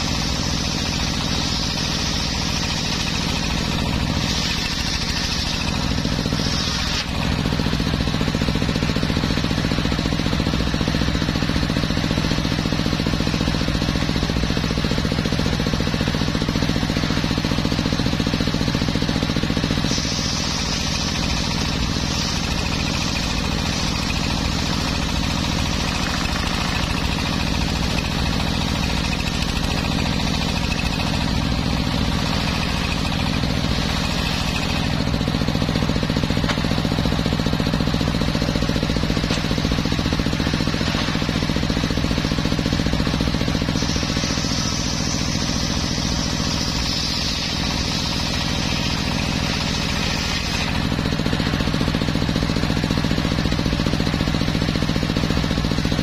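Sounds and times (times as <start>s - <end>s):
engine hum: 0.0s - 56.0s
saw blade sawing wood: 0.0s - 56.0s
high hiss: 19.9s - 23.9s, 43.7s - 50.7s.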